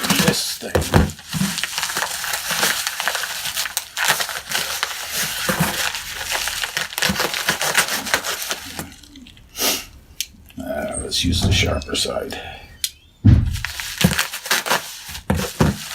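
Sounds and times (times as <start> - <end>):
wrapping crinkling and tearing: 0.0 - 9.5, 13.6 - 15.9.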